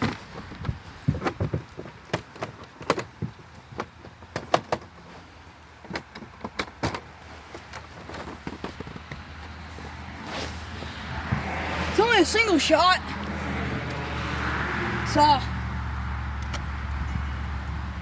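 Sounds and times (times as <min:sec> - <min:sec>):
gun case handling clicks and rattles: 0:00.0 - 0:05.0, 0:05.8 - 0:09.6, 0:15.9 - 0:17.8.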